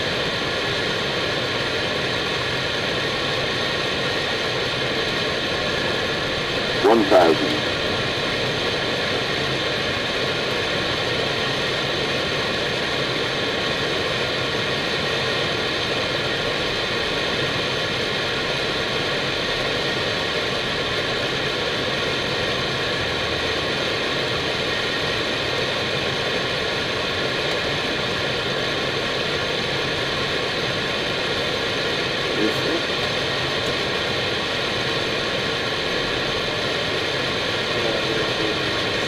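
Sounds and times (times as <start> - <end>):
faint constant tones: 6.4 - 8.8
rushing cockpit noise: 6.7 - 8.4.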